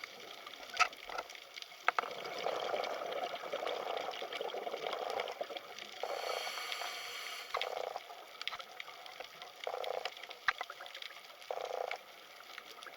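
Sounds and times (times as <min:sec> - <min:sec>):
crackle of small underwater clicks: 0:00.0 - 0:12.9
rushing water bursts: 0:06.0 - 0:07.8.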